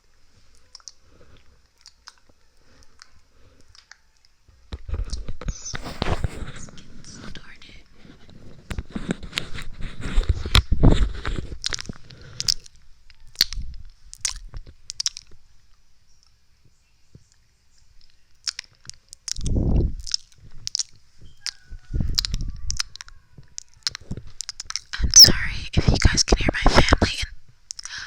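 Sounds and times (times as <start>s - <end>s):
tongue clicks and lip pops: 0.5s - 1.0s, 1.6s - 5.8s, 8.7s - 15.4s, 18.0s - 28.0s.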